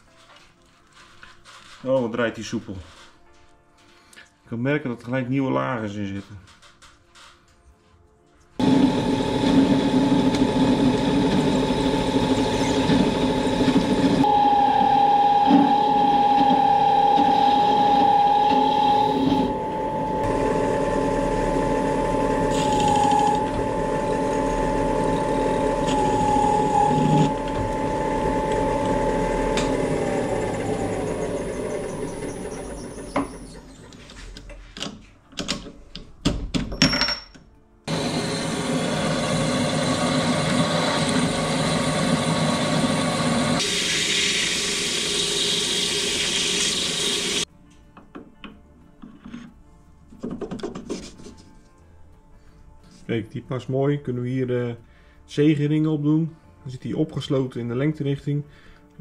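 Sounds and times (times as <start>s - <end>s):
motor whining: 8.6s - 33.7s.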